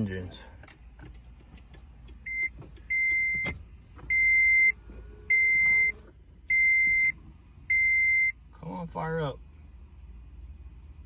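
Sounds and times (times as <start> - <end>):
car warning chime beeping: 2.2 - 8.4.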